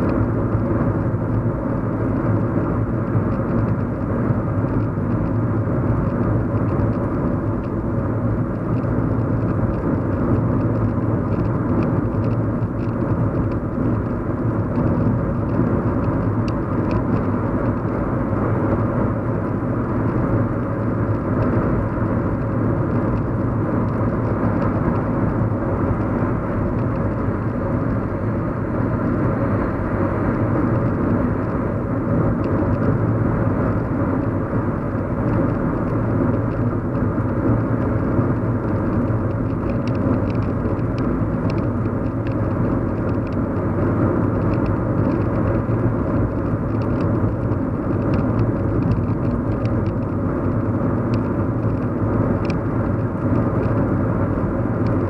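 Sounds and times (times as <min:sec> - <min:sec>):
car cabin road and engine drone: 0:00.0 - 0:55.0
faint ticks: 0:51.1 - 0:52.6.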